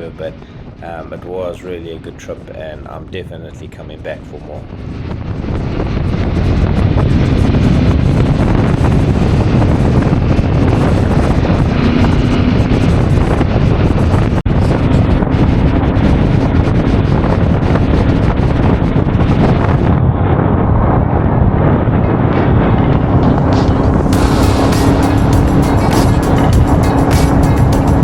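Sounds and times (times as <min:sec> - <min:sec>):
motorcycle engine drone: 0:00.0 - 0:28.0
wind buffeting microphone: 0:00.0 - 0:28.0.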